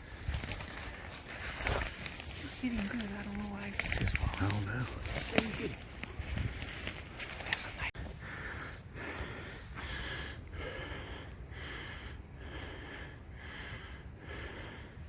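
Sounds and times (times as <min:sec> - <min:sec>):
man breathing hard: 0:08.0 - 0:15.0.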